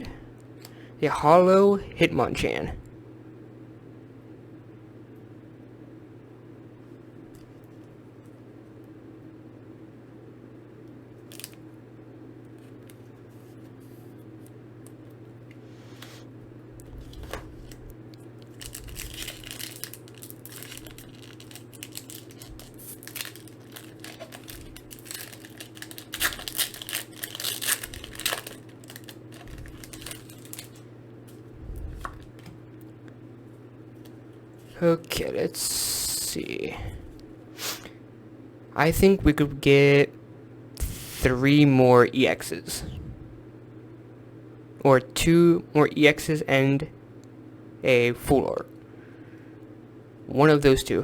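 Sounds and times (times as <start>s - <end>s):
low hum: 2.7s - 36.1s, 42.6s - 44.8s
foil wrapper tearing and crinkling: 18.4s - 30.8s.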